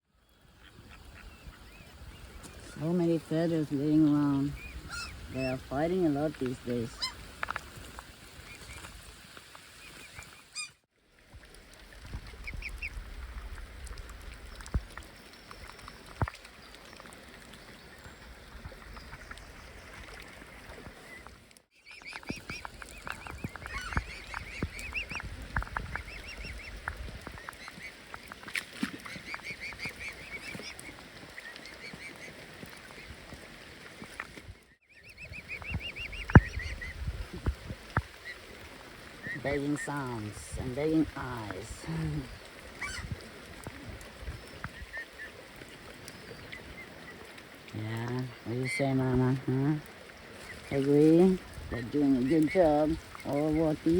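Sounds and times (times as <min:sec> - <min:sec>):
swan cygnets peeping: 0:03.8 - 0:07.2, 0:21.8 - 0:33.1, 0:34.9 - 0:37.1, 0:42.2 - 0:47.3.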